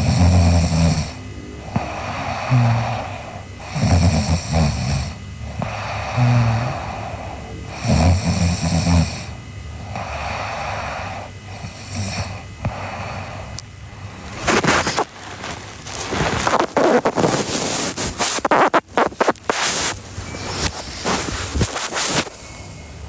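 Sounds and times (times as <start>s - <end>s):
girl snoring: 0.0s - 19.4s
breathy out-breath: 5.1s - 7.9s, 9.7s - 14.2s.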